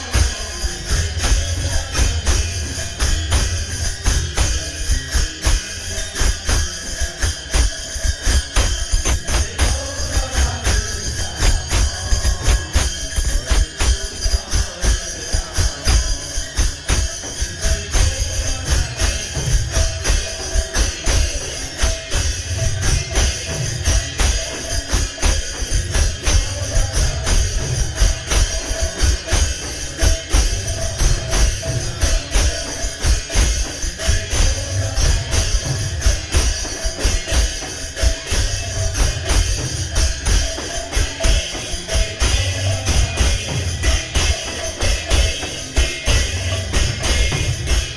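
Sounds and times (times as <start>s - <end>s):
driving drum beat: 0.0s - 47.9s
jingling metal percussion: 0.0s - 47.9s.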